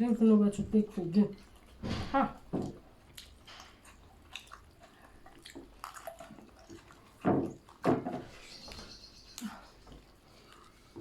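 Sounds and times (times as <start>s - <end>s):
people chewing food: 0.0s - 11.0s.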